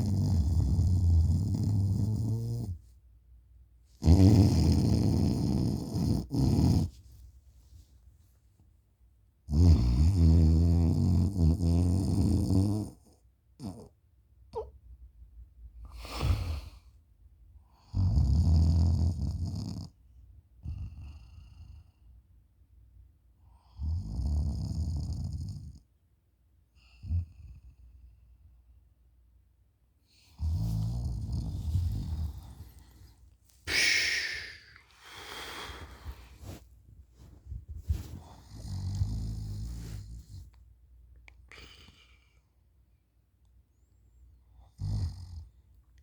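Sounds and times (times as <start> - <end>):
person snoring loudly: 4.0 - 6.9, 33.7 - 35.9
rasping breath: 31.6 - 36.6
person snoring: 33.7 - 36.6.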